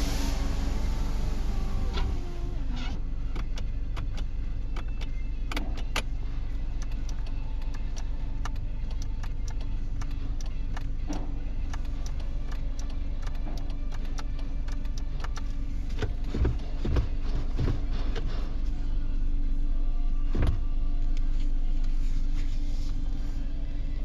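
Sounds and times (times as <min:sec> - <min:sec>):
car engine idling: 0:00.0 - 0:24.0
light irregular clicks: 0:06.8 - 0:16.1.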